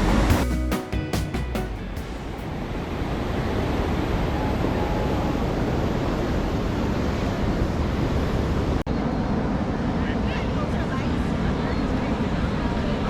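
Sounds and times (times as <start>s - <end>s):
ocean surf washing on beach: 2.0s - 8.8s.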